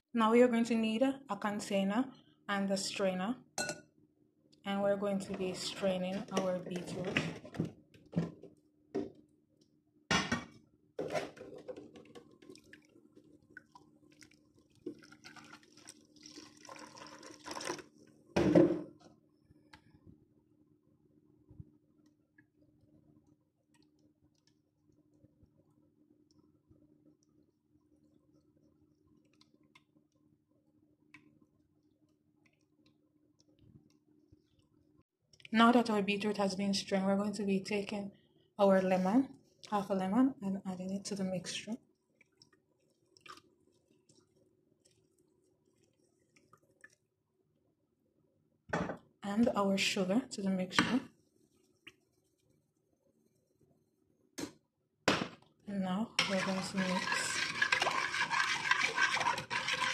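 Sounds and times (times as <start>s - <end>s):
liquid splashing and dripping: 11.9s - 18.0s, 41.9s - 47.1s.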